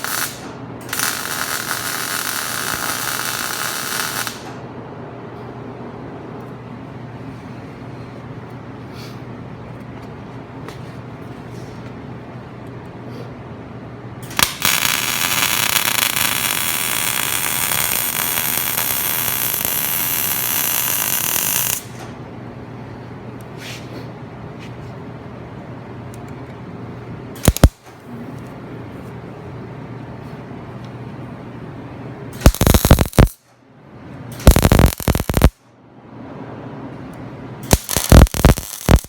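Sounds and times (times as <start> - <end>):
welder arc crackle: 0.0 - 4.6, 14.3 - 22.1, 27.4 - 27.9, 32.4 - 33.4, 34.4 - 35.6, 37.7 - 39.0
steady low hum: 0.0 - 39.0.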